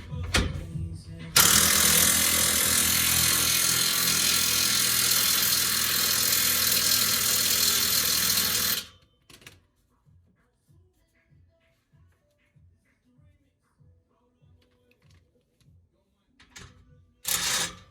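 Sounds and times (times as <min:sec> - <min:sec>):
power tool running: 0:01.4 - 0:08.9.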